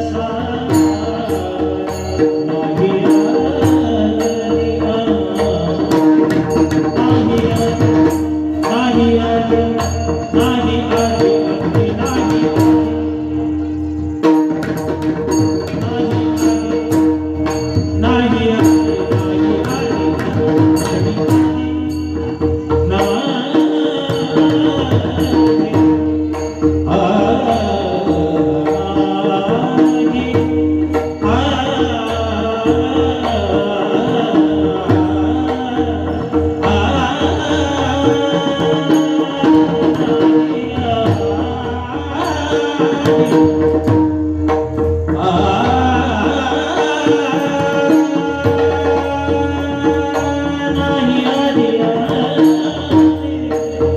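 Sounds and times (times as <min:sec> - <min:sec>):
hand drum playing: 0:00.0 - 0:53.9
devotional singing: 0:45.2 - 0:53.8.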